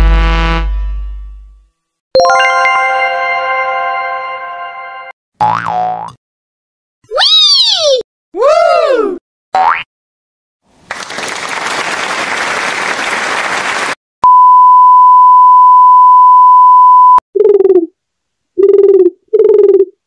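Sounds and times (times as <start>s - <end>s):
censor bleep: 14.2s - 17.2s.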